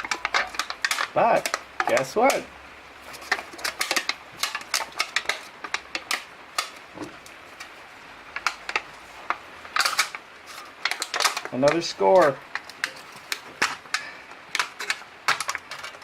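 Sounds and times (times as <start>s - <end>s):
tool clicking on metal can: 0.0s - 2.5s.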